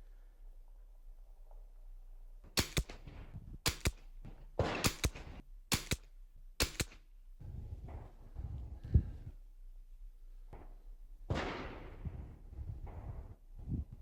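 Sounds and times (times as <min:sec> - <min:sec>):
rifle shots: 0:02.6 - 0:07.1.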